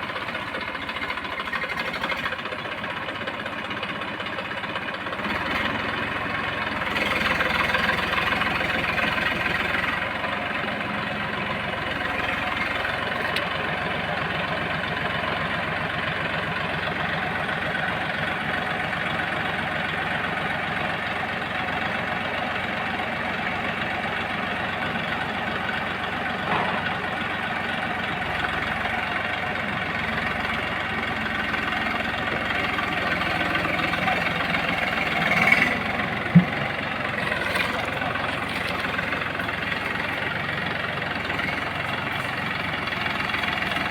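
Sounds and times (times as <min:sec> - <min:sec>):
tractor diesel engine running: 0:00.0 - 0:43.9.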